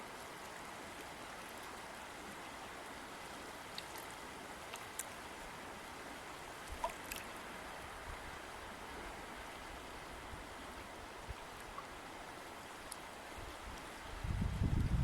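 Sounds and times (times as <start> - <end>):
river water flowing: 0.0 - 15.0
faint water clicks: 0.2 - 2.6, 3.5 - 5.5, 6.6 - 7.5, 11.2 - 14.0.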